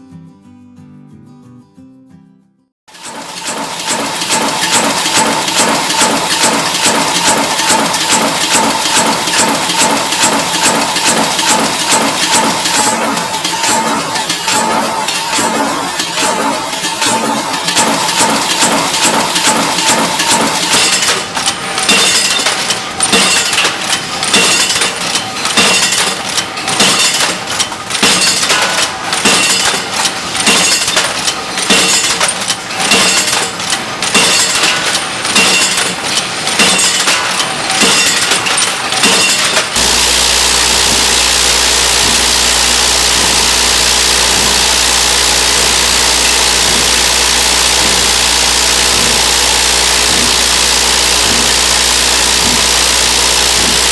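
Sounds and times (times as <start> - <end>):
metallic machine clatter: 2.9 - 53.9
steady machine hum: 3.0 - 53.9.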